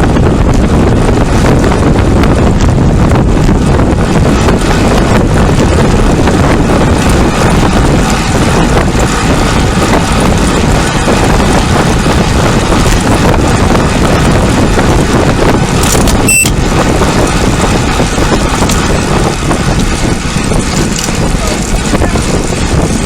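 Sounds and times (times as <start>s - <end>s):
wind rush on microphone: 0.0s - 23.0s
brief high tone: 16.3s - 16.5s.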